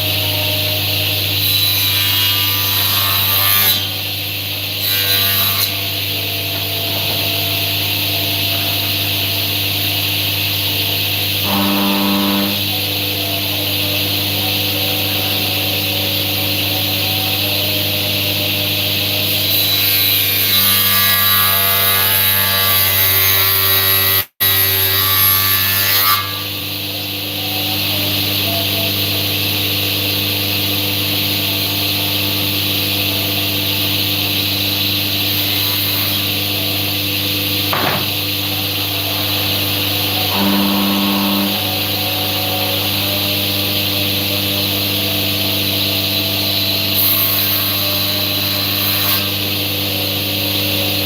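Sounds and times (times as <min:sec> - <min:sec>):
woodworking power tool running: 0:00.0 - 0:51.0.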